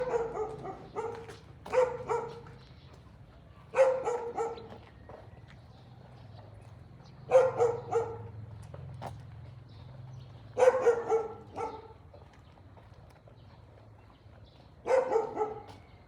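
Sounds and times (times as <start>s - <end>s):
dog barking: 0.0s - 2.5s, 3.7s - 4.8s, 7.3s - 8.4s, 10.6s - 12.0s, 14.8s - 15.8s.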